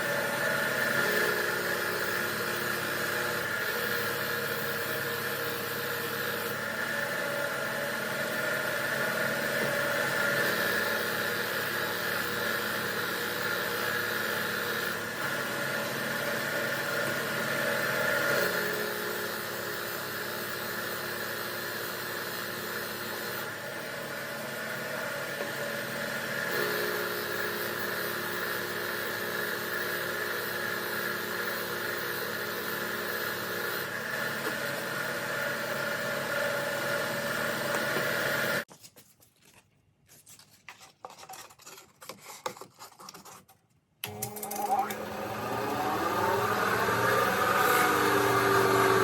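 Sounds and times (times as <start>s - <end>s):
power tool grinding rust off metal: 44.7s - 49.0s.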